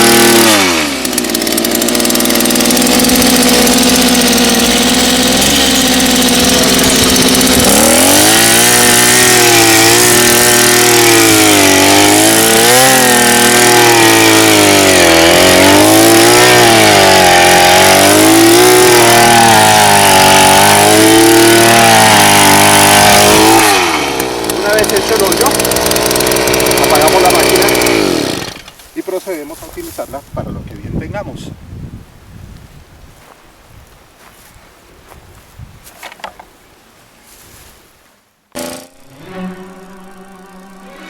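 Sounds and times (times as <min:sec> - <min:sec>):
earth auger engine running: 0:00.0 - 0:28.8, 0:38.6 - 0:41.0.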